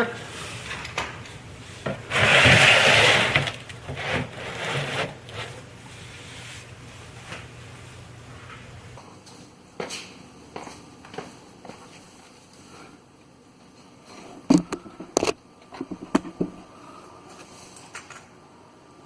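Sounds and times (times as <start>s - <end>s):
body scraping along ground: 0.2s - 9.0s.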